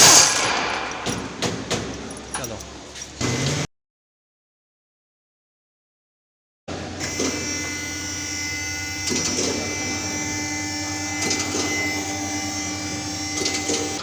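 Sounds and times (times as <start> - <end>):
mechanical hum with high whine: 0.0 - 3.7, 6.7 - 14.0.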